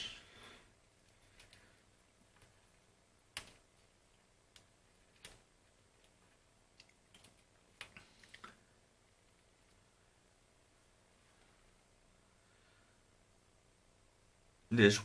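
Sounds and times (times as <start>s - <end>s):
small clicks and taps of handling: 0.9s - 8.6s.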